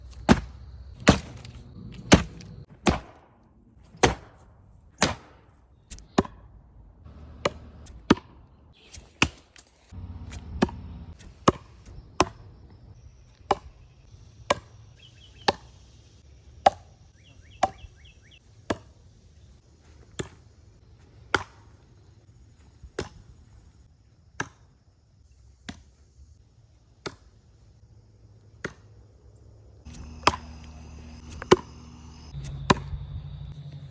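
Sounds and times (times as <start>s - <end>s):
axe chopping wood: 0.1s - 3.3s, 3.9s - 6.5s, 7.1s - 12.4s, 16.6s - 16.9s, 21.3s - 21.7s, 24.4s - 24.6s, 29.9s - 32.8s.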